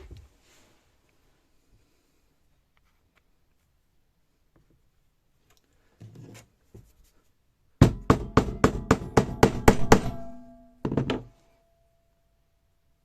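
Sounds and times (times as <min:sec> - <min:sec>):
hammer striking metal: 0:07.8 - 0:11.4.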